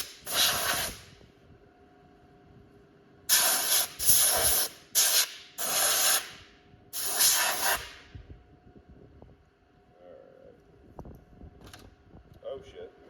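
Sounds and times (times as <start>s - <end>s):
compressed air blow gun hissing: 0.0s - 1.1s, 3.3s - 6.4s, 7.0s - 8.0s.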